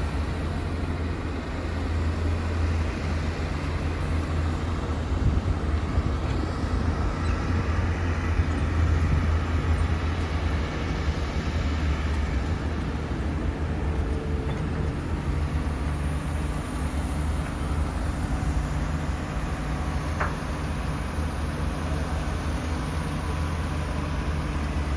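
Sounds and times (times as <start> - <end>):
excavator diesel engine droning: 0.0 - 24.9.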